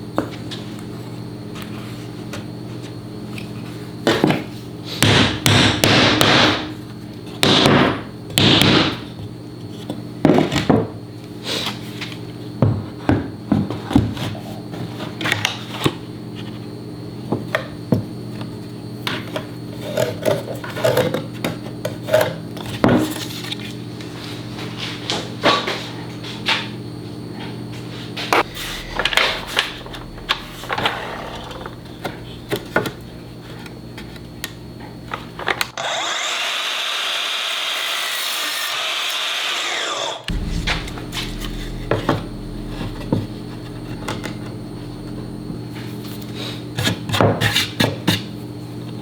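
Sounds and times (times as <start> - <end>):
steady low hum: 27.9 - 34.5, 40.3 - 46.8.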